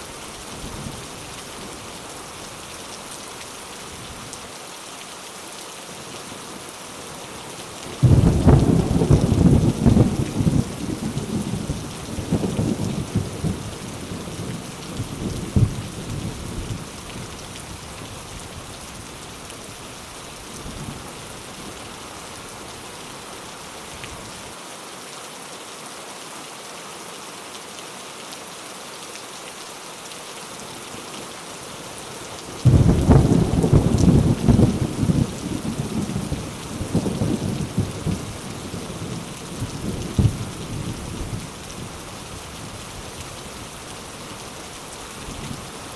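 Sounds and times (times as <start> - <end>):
rain falling: 0.0 - 45.9
loud thunderclap: 8.0 - 11.3, 32.6 - 38.2
rolling thunder: 8.0 - 13.7, 32.6 - 41.9.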